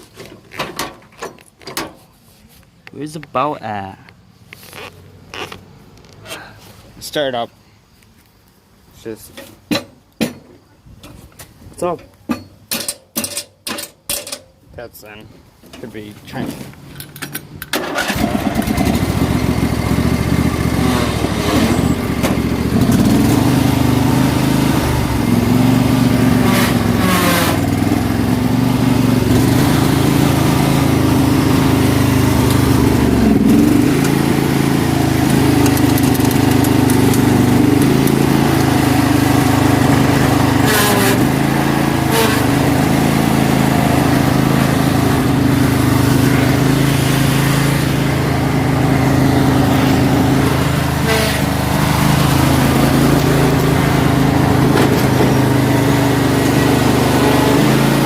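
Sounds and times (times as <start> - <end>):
riding lawn mower engine running: 15.6 - 58.0.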